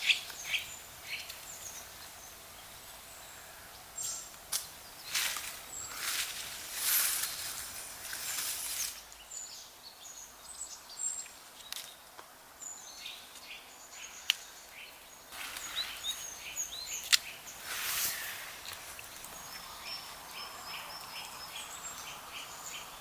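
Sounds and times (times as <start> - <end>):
small birds chirping: 0.0 - 23.0
hissy rustling noise: 4.0 - 9.2, 15.3 - 20.3.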